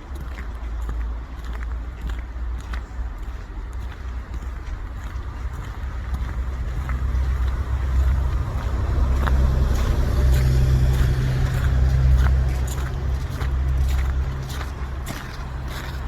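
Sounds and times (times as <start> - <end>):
footsteps crunching in snow: 0.2 - 16.0
vehicle engine passing by: 5.3 - 16.0.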